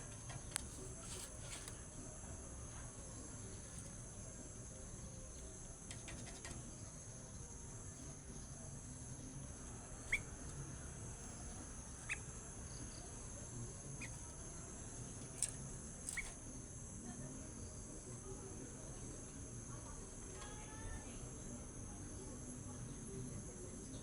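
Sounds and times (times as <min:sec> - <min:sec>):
high insect trill: 0:00.0 - 0:24.0
bird short chirps: 0:10.0 - 0:10.3, 0:12.0 - 0:12.3.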